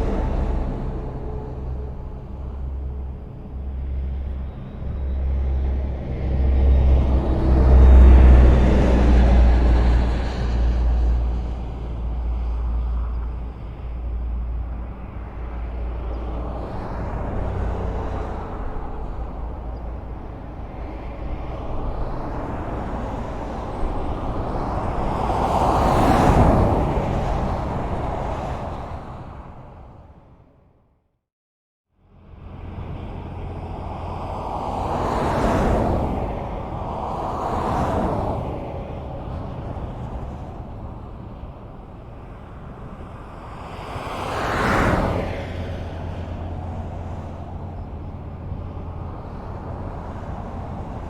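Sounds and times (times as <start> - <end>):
vehicles passing on highway: 0.0 - 31.0, 32.0 - 51.0.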